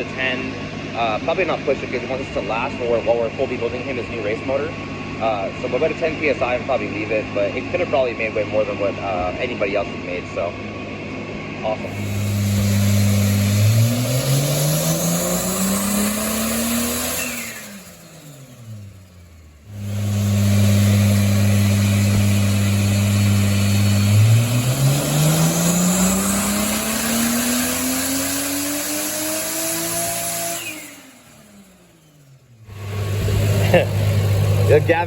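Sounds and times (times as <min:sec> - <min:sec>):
car engine revving on dyno: 0:00.0 - 0:35.0.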